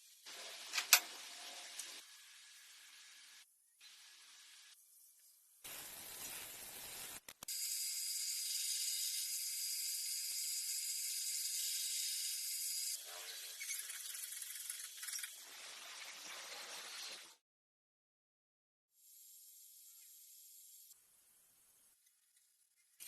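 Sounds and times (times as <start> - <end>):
machine hiss with thin whine: 5.6 - 13.8, 19.0 - 22.0.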